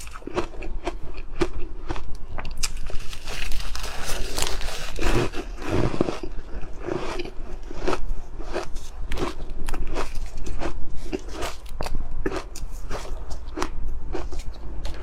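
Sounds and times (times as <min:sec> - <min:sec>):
ice being chewed: 0:00.0 - 0:15.0.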